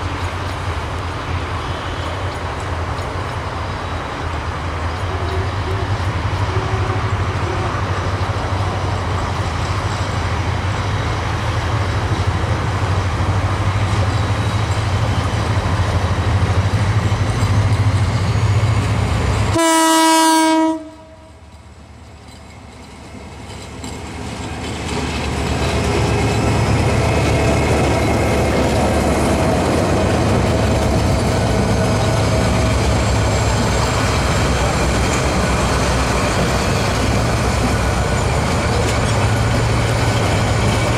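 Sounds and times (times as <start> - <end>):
diesel train rumbling: 0.0 - 40.9
locomotive horn: 5.1 - 7.8, 19.5 - 21.4.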